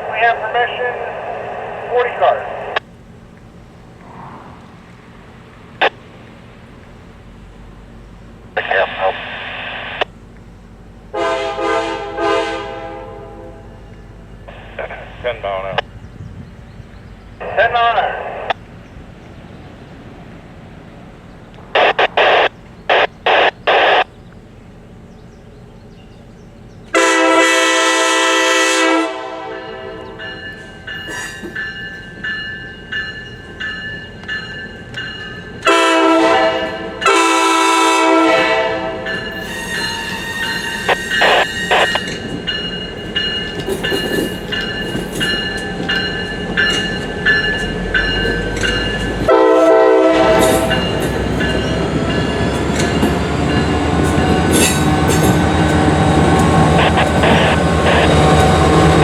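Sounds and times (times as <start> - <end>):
locomotive engine: 0.0 - 59.0
locomotive horn blasts: 11.1 - 13.9, 26.9 - 30.4, 35.6 - 42.3, 49.3 - 51.8
wheels clicking over rail joints: 39.1 - 49.4, 50.2 - 57.8.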